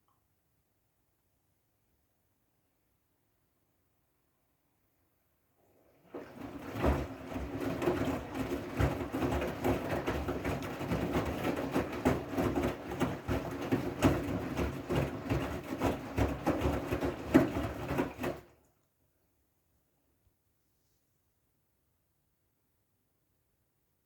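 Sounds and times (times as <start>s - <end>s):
washing machine motor hum: 5.7s - 18.6s
wet laundry knocking and swishing: 6.0s - 18.6s.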